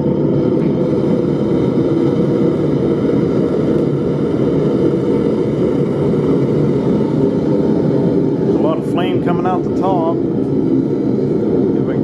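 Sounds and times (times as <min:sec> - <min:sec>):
gas burner flame rushing: 0:00.0 - 0:12.0.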